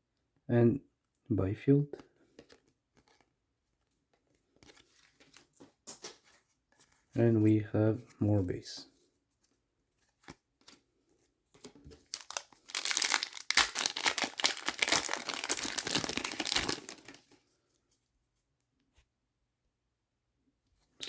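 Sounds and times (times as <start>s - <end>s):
wrapper tearing and crinkling: 12.0s - 17.4s.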